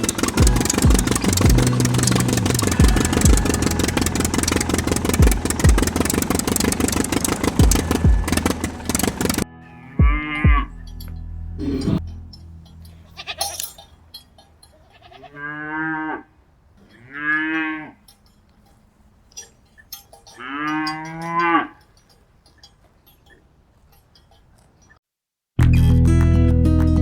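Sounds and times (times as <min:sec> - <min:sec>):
cattle mooing: 0:14.9 - 0:18.1, 0:20.3 - 0:21.8.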